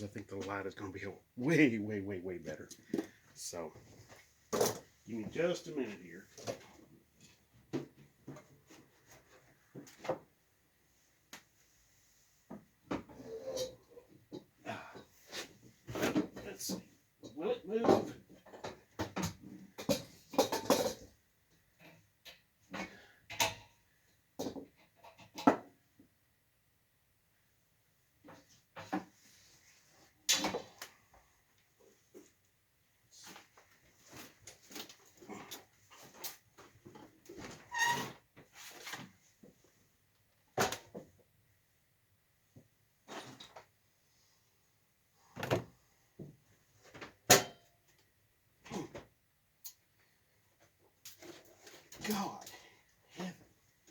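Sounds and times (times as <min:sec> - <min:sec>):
objects clunking and knocking: 0:02.8 - 0:05.4, 0:06.3 - 0:10.4, 0:12.5 - 0:25.8, 0:28.2 - 0:29.5, 0:30.2 - 0:31.0, 0:45.3 - 0:48.0.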